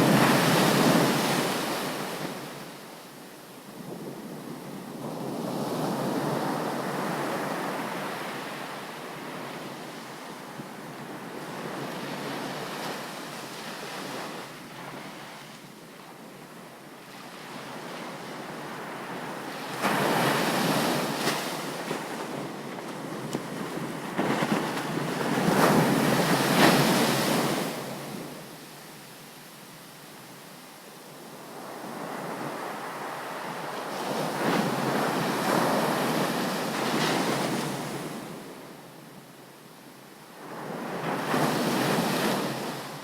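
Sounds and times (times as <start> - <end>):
ocean waves breaking on beach: 17.2 - 28.6, 31.4 - 38.9.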